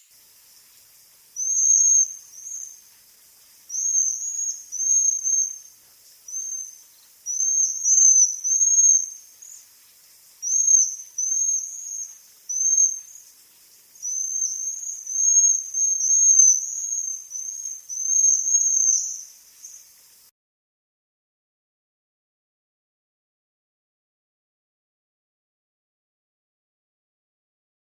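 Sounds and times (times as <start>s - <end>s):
birds giving trilled calls: 7.3s - 9.2s, 14.0s - 19.8s.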